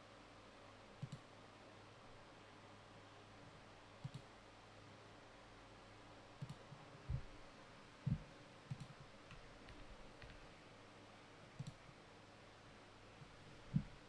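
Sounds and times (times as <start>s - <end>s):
faint steady hum: 0.0s - 14.0s
soft clicks: 1.0s - 1.3s, 4.0s - 4.3s, 6.4s - 6.6s, 8.7s - 10.5s, 11.6s - 11.8s.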